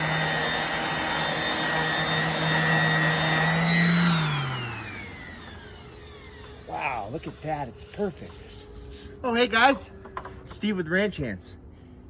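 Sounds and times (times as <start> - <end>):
electric motor whining and spinning down: 0.0 - 7.8.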